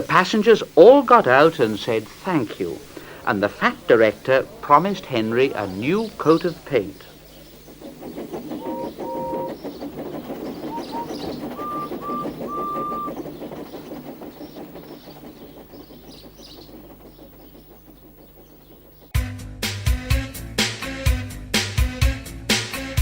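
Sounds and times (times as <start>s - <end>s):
steam locomotive chuffing: 0.0s - 23.0s
train whistle toots: 8.5s - 9.7s, 10.6s - 13.3s.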